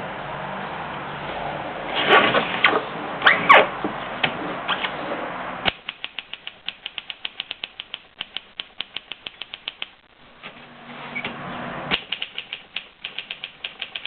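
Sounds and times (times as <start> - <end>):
typewriter key strikes: 11.9 - 14.0.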